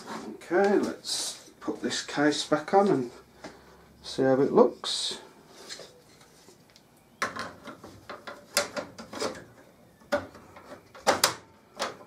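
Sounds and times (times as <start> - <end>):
computer case panel scraping: 8.4 - 9.6.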